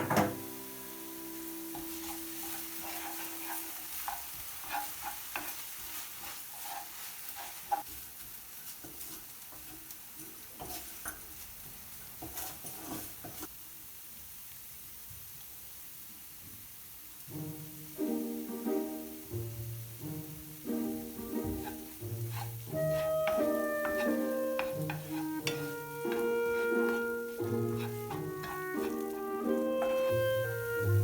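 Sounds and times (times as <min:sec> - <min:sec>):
food sizzling in a pan: 0:00.0 - 0:31.0
utensil scraping a pan: 0:01.7 - 0:08.0, 0:08.8 - 0:11.4, 0:12.2 - 0:13.5, 0:20.8 - 0:31.0.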